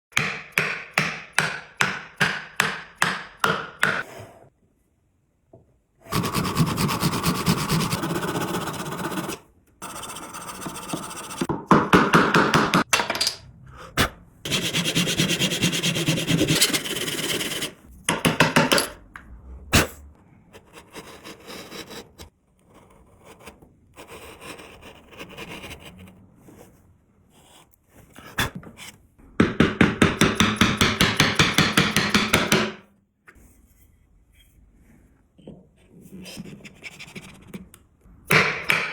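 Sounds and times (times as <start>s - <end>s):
rasping on wood: 6.1s - 12.9s, 14.5s - 18.6s.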